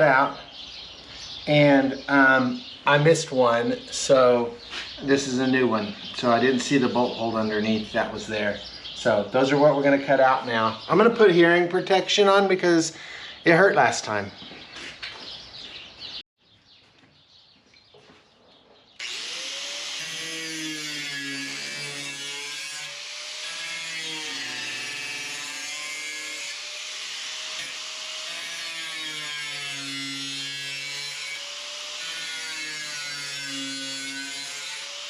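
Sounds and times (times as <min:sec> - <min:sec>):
power tool cutting sheet steel: 0:19.0 - 0:35.0.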